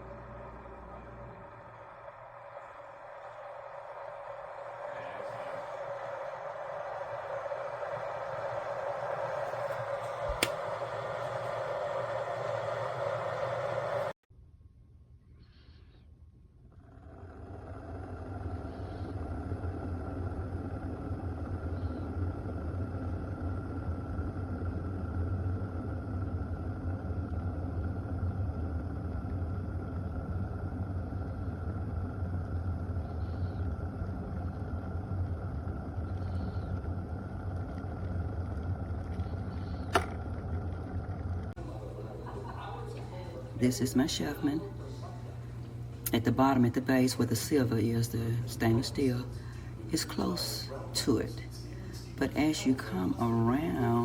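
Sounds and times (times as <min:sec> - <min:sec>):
electric kettle boiling rumble: 0:00.0 - 0:14.2, 0:16.6 - 0:54.0
kettle switch click: 0:09.5 - 0:11.6, 0:39.9 - 0:40.1.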